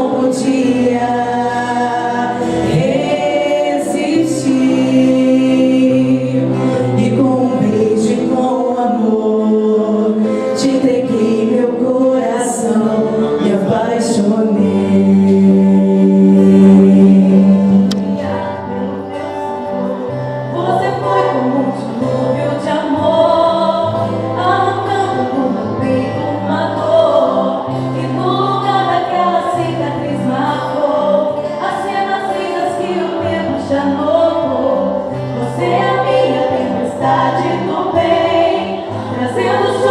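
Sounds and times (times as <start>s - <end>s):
vocal group singing: 0.0s - 39.9s
held bass notes: 12.8s - 28.9s.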